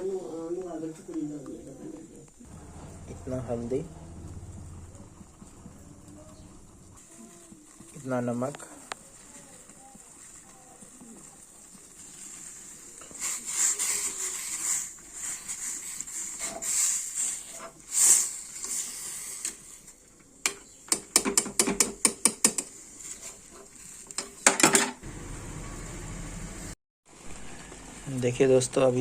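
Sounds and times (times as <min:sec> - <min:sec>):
gas burner rushing: 0:02.4 - 0:07.1, 0:25.0 - 0:28.3
scraping in a metal bowl: 0:09.6 - 0:19.9.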